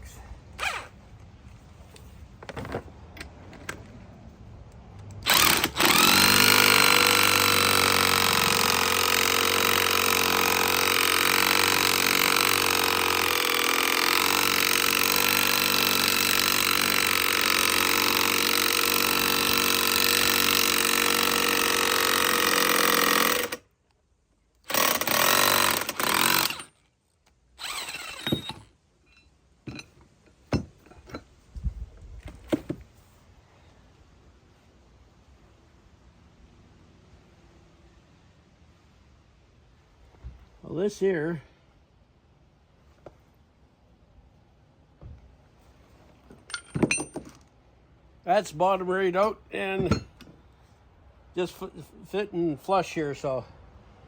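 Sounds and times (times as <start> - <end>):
motor-driven tool running: 5.2 - 23.6, 27.6 - 28.6.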